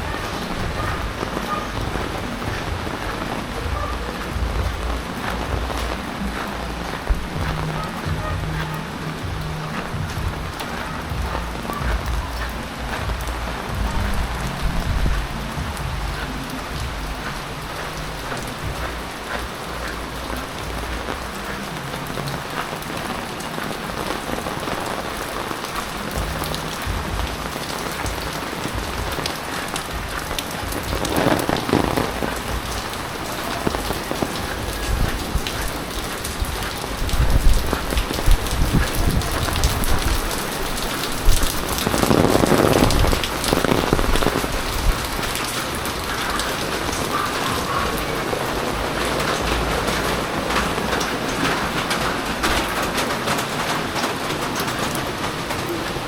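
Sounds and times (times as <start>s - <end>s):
heavy rain striking surfaces: 0.0s - 56.0s.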